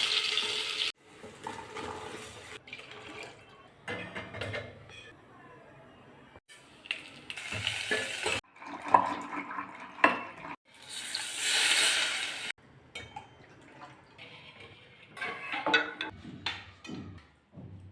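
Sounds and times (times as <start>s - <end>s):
utensils and dishes clinking: 1.4s - 5.2s, 12.9s - 17.4s.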